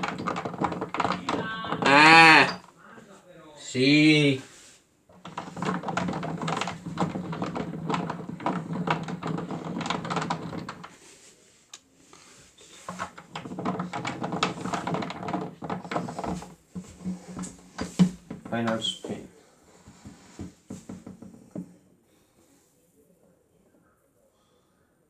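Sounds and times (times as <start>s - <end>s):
plastic drum rattling: 0.0s - 2.7s, 5.1s - 11.0s, 12.8s - 19.3s, 19.9s - 21.8s.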